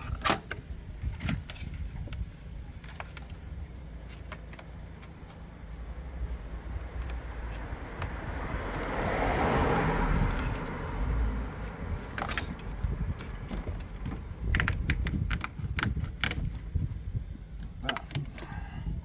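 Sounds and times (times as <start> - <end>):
low steady rumble: 0.0 - 19.0
plastic connectors clicking and rattling: 11.5 - 16.7, 17.5 - 18.6.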